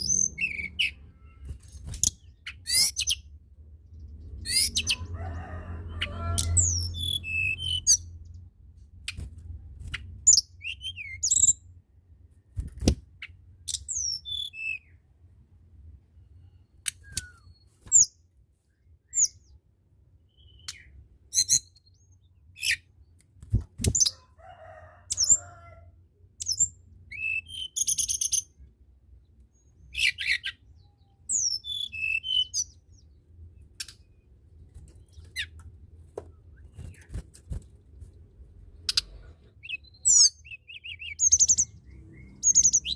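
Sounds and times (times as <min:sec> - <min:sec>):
songbird whistling: 0:31.3 - 0:32.8.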